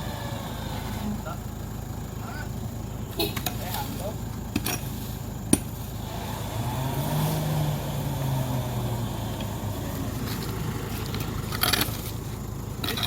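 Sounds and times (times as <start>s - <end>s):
engine running: 0.0s - 13.0s
clatter: 10.2s - 12.2s, 12.8s - 13.0s.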